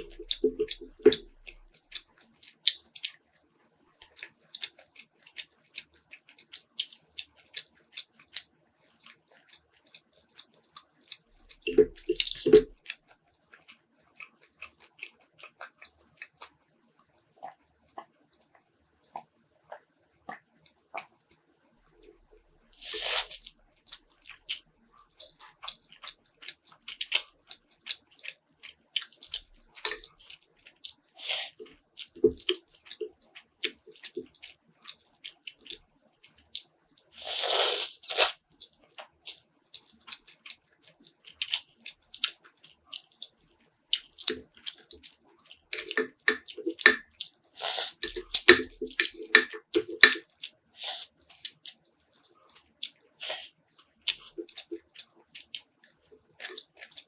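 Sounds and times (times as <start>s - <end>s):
chewing and lip smacking: 0.0s - 16.6s, 22.0s - 57.0s
loud slurp: 37.2s - 38.4s, 47.6s - 48.2s.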